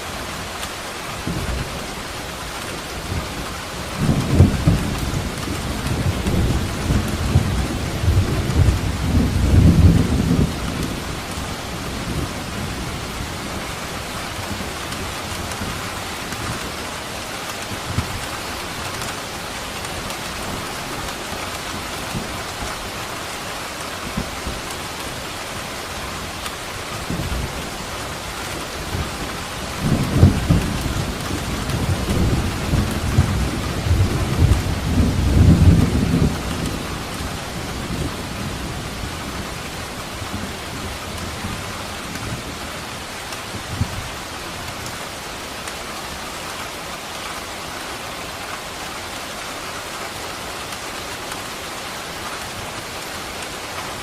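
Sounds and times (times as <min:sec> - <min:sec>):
steady rain falling: 0:00.0 - 0:54.0
rolling thunder rumbling: 0:03.0 - 0:16.8, 0:25.9 - 0:44.8.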